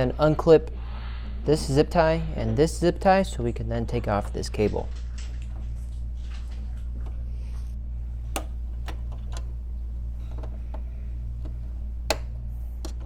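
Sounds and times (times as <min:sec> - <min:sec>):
steady low hum: 0:07.8 - 0:13.0.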